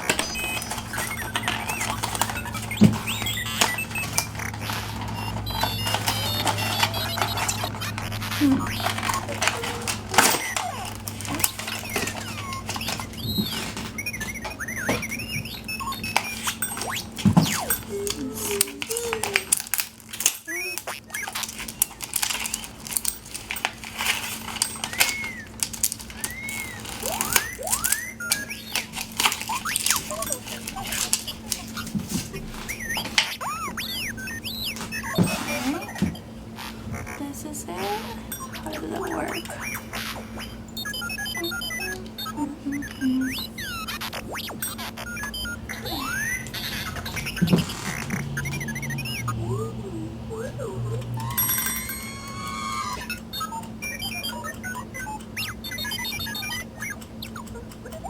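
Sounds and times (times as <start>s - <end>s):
electronic beeps and whistles: 0.0s - 19.3s, 20.4s - 36.3s, 38.3s - 58.0s
plastic handling clicks: 0.0s - 33.3s
steady low hum: 0.0s - 52.0s.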